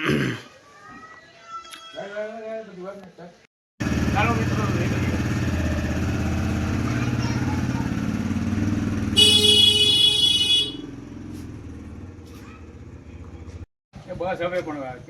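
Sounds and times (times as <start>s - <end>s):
vehicle engine running: 3.8s - 14.1s
high-pitched horn honk: 9.2s - 10.9s.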